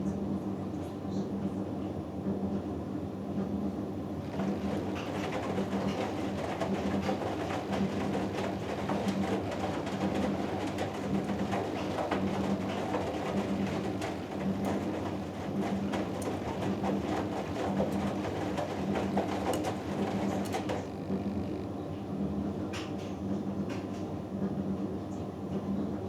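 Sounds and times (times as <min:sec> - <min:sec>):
washing machine motor hum: 0:03.7 - 0:23.6
laundry knocking in drum: 0:04.3 - 0:21.2.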